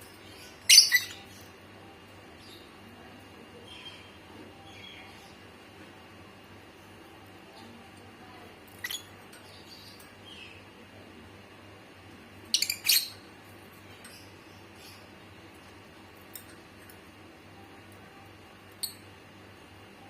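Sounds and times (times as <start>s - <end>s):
small bird chirping: 0.2s - 1.6s, 8.7s - 10.6s, 12.5s - 13.3s.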